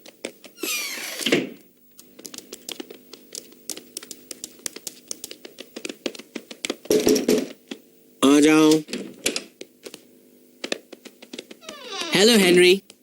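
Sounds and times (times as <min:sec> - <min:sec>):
rapid irregular clicking: 0:02.1 - 0:06.9, 0:10.6 - 0:11.6.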